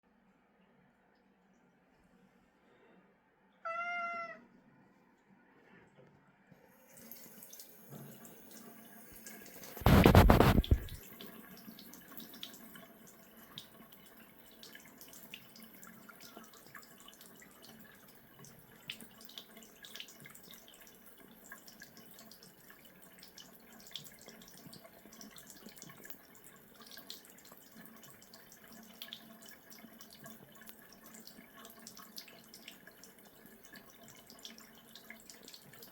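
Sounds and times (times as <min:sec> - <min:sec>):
cat meowing: 0:03.6 - 0:04.5
loud rush of water: 0:09.8 - 0:11.0.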